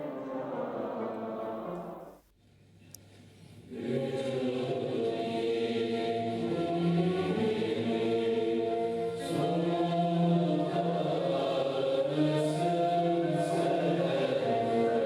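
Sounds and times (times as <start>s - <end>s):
choir singing: 0.0s - 2.2s, 3.7s - 15.0s.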